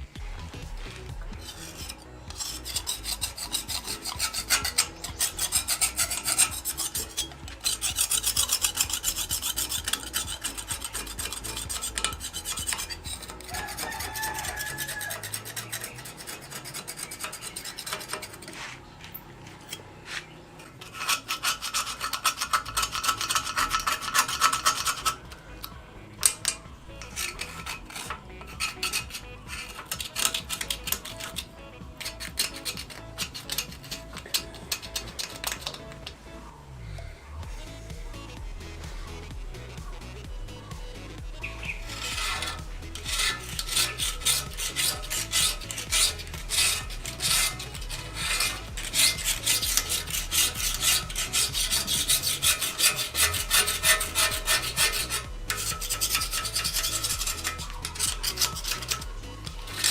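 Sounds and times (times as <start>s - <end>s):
metal being filed by hand: 0.0s - 36.2s, 37.7s - 59.9s.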